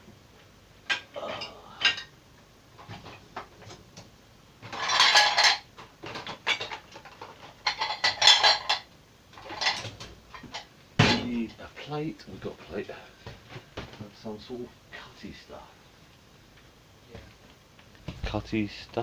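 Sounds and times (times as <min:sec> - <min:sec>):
crockery and cutlery clinking: 0:04.7 - 0:11.4.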